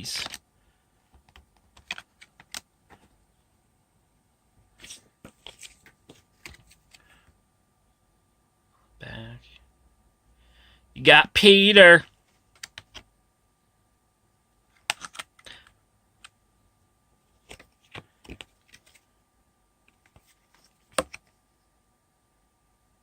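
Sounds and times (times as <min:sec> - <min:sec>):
paper and card handled: 0:01.2 - 0:03.1, 0:04.8 - 0:07.2, 0:14.7 - 0:15.6, 0:17.4 - 0:19.1, 0:19.9 - 0:21.4.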